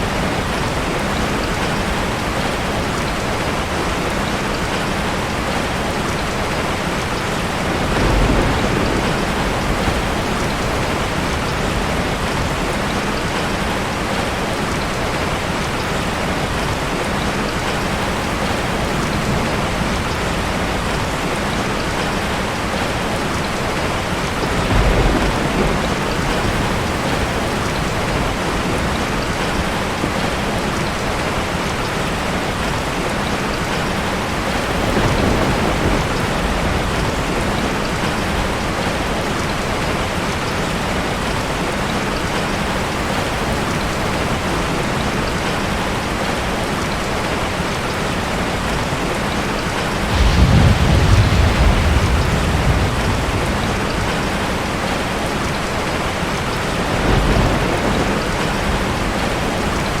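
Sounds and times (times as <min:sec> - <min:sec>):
heavy rain: 0:00.0 - 1:00.0
thunder rumbling: 0:06.2 - 0:31.2, 0:33.8 - 0:41.4, 0:48.9 - 1:00.0.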